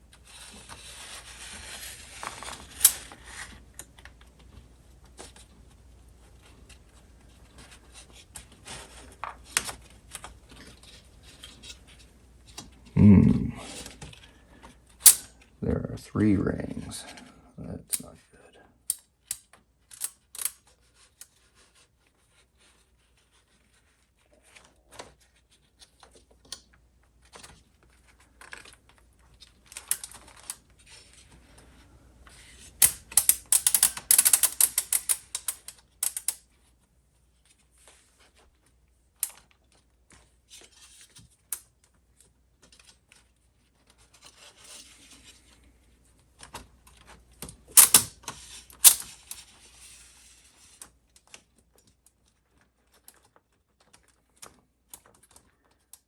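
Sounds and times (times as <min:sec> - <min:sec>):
mechanism clicking and scraping: 0:15.0 - 0:15.3, 0:19.3 - 0:20.6, 0:32.5 - 0:36.4, 0:47.7 - 0:50.3
rapid clicks and rattling: 0:32.8 - 0:36.4, 0:47.8 - 0:48.1.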